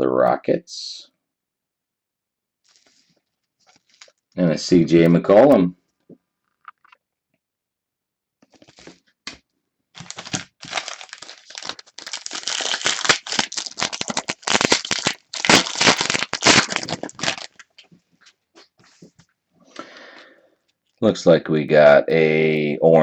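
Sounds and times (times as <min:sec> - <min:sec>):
foil wrapper tearing and crinkling: 0:02.6 - 0:04.2, 0:08.5 - 0:09.0, 0:10.0 - 0:17.9.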